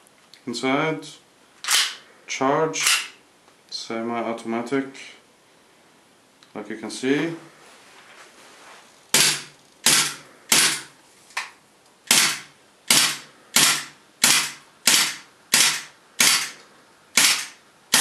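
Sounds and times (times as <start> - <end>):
airsoft pistol shots: 1.7 - 2.0, 2.8 - 3.2, 9.2 - 10.9, 12.1 - 16.6, 17.2 - 18.0.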